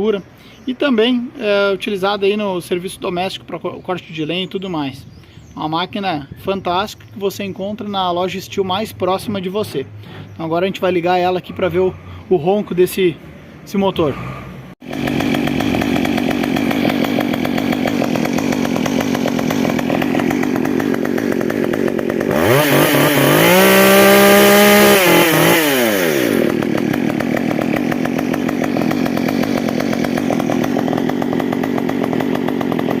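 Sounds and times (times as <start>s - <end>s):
chainsaw engine idling and revving: 7.5s - 13.0s, 14.0s - 33.0s.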